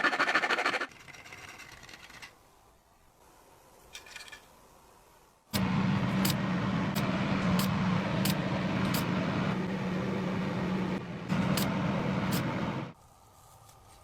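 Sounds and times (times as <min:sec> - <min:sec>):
motor humming: 0:05.6 - 0:13.0.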